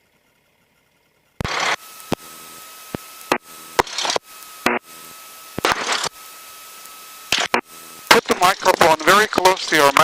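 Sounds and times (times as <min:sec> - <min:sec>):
static hiss on headset: 0:01.4 - 0:10.0
thin high whine: 0:01.4 - 0:10.0
sharp clicks: 0:07.3 - 0:10.0.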